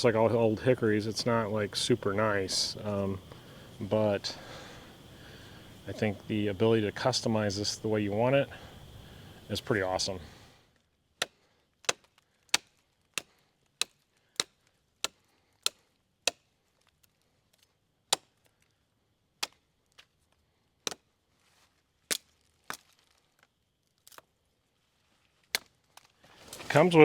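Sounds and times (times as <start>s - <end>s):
machete chopping wood: 11.2s - 16.5s.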